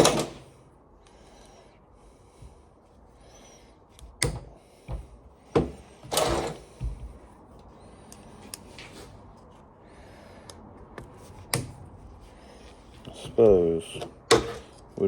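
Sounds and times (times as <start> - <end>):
tools knocking and clattering: 13.9 - 14.9.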